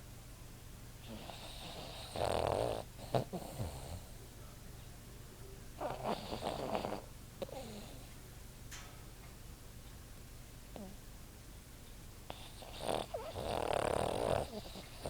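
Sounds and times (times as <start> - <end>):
dog snoring: 1.0 - 4.2, 5.8 - 8.1, 12.3 - 15.0.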